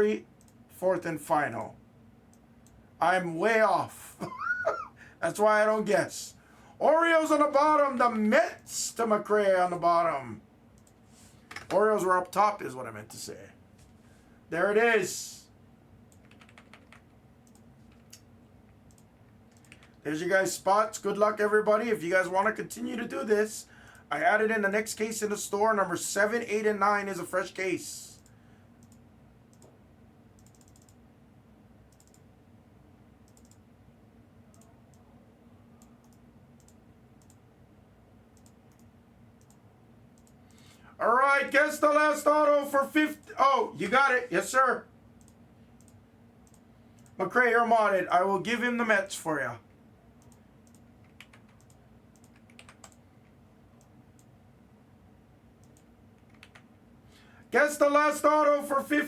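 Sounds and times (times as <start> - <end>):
low steady hum: 0.0 - 59.0
keyboard typing clicks: 10.8 - 11.8, 16.1 - 18.2, 18.8 - 20.0, 28.2 - 29.8, 30.4 - 31.0, 31.9 - 32.3, 33.2 - 33.6, 35.8 - 37.4, 38.4 - 39.6, 40.2 - 40.5, 45.2 - 47.2, 50.2 - 53.0, 55.6 - 56.7.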